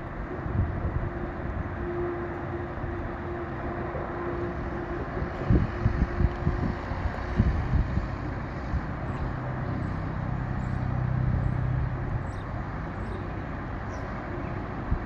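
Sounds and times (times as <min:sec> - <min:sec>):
wind buffeting microphone: 0:00.0 - 0:15.0
vehicle engine passing by: 0:03.2 - 0:15.0.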